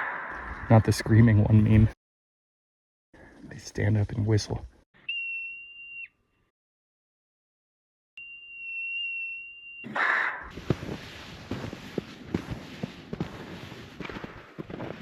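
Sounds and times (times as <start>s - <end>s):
marmot alarm whistles: 5.0s - 6.2s, 8.2s - 10.1s.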